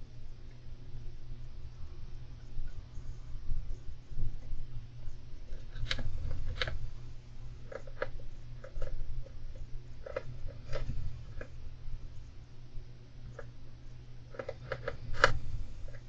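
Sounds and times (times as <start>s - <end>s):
steady low rumble: 0.0s - 16.0s
hamster clicks and crunches: 3.6s - 12.6s, 13.2s - 16.0s.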